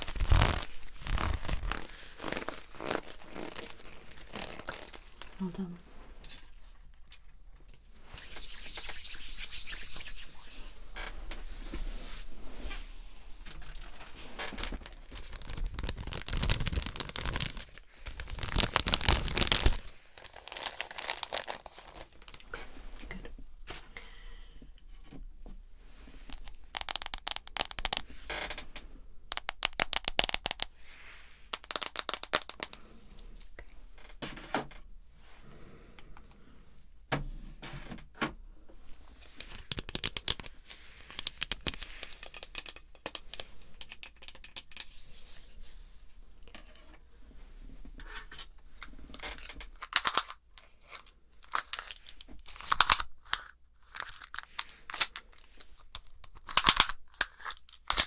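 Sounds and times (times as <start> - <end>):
crinkling and scratching: 0.0 - 5.6, 13.4 - 23.2, 26.1 - 28.7, 29.3 - 30.7, 31.5 - 33.0, 38.9 - 45.7, 48.0 - 58.0
sharp cracks: 14.9 - 21.5.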